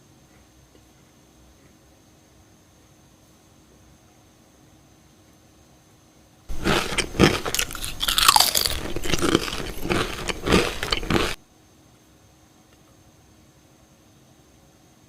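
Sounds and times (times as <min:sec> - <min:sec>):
crunching potato chip: 0:06.5 - 0:11.4.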